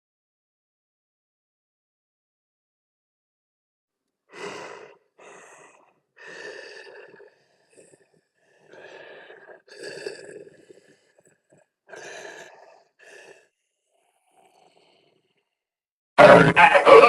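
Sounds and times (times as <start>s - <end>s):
harsh grunting creature calls: 16.2s - 17.0s.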